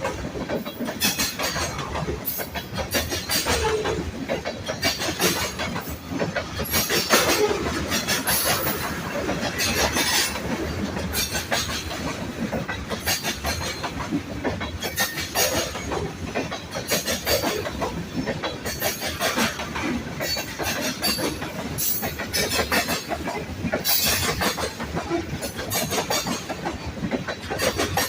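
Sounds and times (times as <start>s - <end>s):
train wheel squeals: 0.0s - 12.1s, 14.7s - 28.0s
train wheels clacking over rails: 0.0s - 28.0s.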